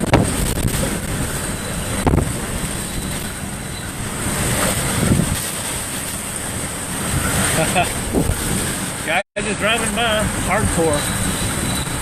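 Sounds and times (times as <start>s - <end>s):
wind noise on microphone: 0.0s - 9.1s
strong wind blowing: 0.0s - 12.0s.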